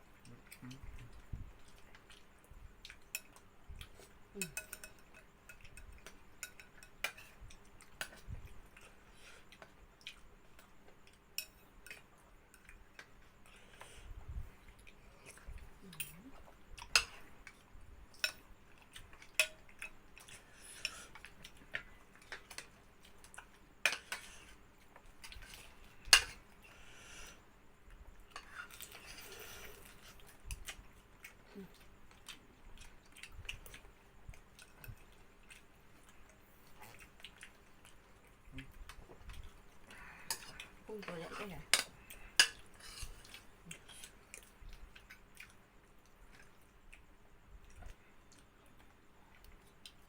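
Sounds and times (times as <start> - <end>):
quiet eating sounds: 0.0 - 50.0
spoons clinking against bowls: 4.4 - 7.4.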